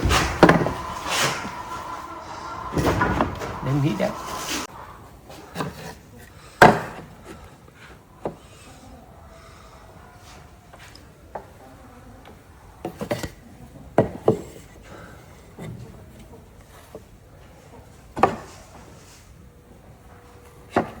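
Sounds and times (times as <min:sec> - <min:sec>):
wood rubbing: 0:00.0 - 0:04.7.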